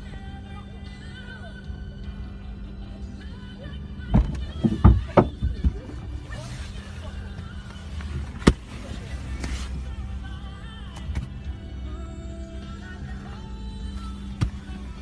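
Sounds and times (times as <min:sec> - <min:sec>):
music: 0:00.0 - 0:15.0
heavy vehicle collision impacts: 0:04.1 - 0:05.9.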